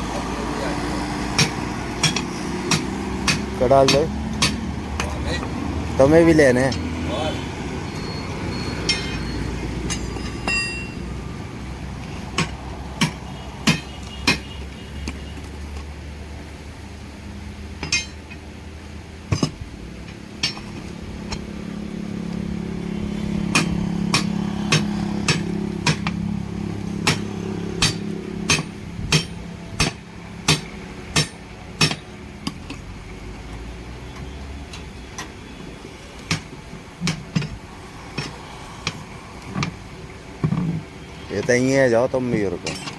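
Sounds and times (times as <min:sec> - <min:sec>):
engine humming: 0:00.0 - 0:42.9
hammer striking steel rim: 0:01.4 - 0:05.1, 0:08.8 - 0:11.0, 0:12.4 - 0:14.5, 0:17.8 - 0:18.3, 0:23.5 - 0:26.3, 0:26.9 - 0:32.8.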